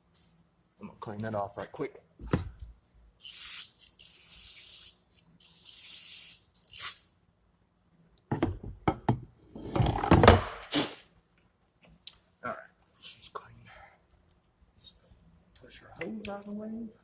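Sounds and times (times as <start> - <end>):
aerosol spray hissing: 3.2 - 5.0.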